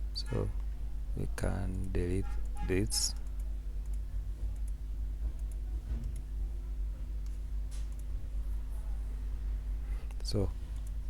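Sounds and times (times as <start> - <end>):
steady low hum: 0.0 - 11.0
computer mouse clicks: 3.2 - 4.8, 5.4 - 6.3, 7.2 - 8.1.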